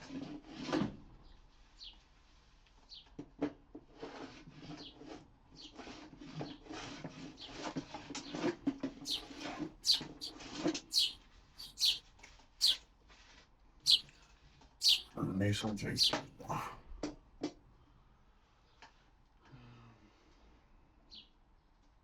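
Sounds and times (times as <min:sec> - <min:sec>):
small bird chirping: 0:09.1 - 0:10.3, 0:10.9 - 0:12.0, 0:14.8 - 0:16.7.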